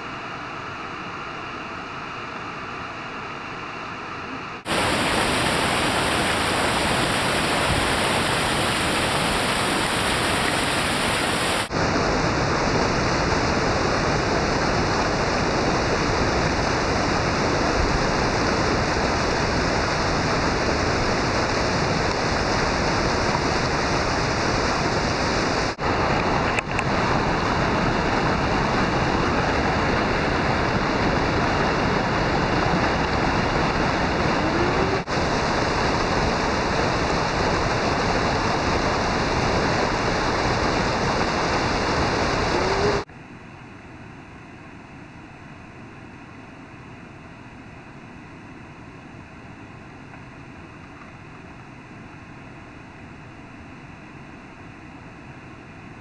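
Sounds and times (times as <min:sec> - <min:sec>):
water pouring over waterfall: 0:04.7 - 0:11.7.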